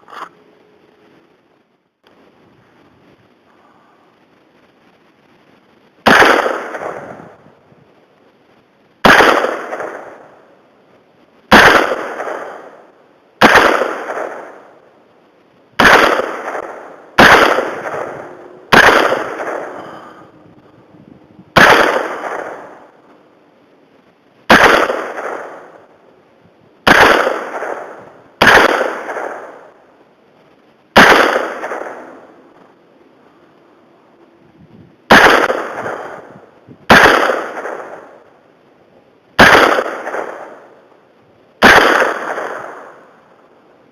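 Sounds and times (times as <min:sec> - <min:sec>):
rifle shots with echo: 0:06.0 - 0:07.4, 0:09.0 - 0:10.5, 0:11.5 - 0:14.9, 0:15.8 - 0:20.3, 0:21.5 - 0:23.0, 0:24.4 - 0:26.0, 0:26.8 - 0:29.9, 0:30.9 - 0:32.7, 0:35.1 - 0:38.4, 0:39.4 - 0:40.8, 0:41.6 - 0:43.2.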